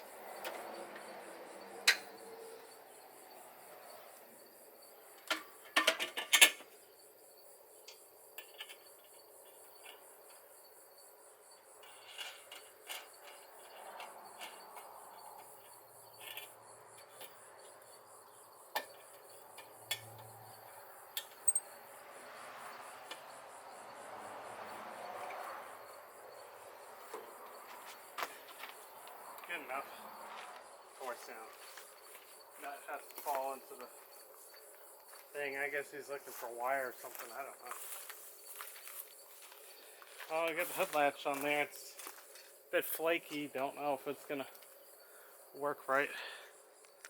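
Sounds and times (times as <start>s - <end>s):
insects chirping: 0.0s - 47.0s
metal tools clinking and knocking: 21.2s - 21.7s.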